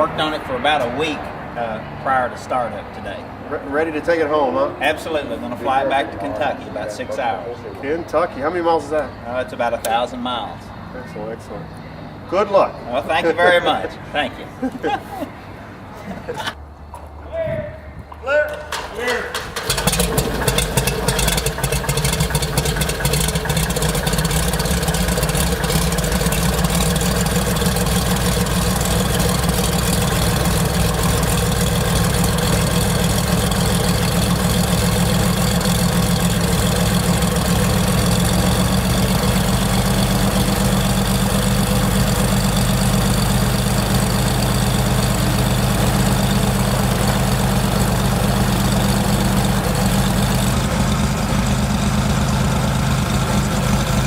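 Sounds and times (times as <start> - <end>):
piston aircraft engine idling: 18.5 - 54.0.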